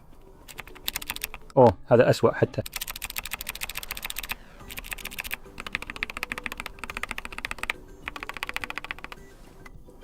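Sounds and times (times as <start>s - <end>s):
keyboard key pressed rapidly: 0.5s - 1.4s, 2.6s - 9.2s.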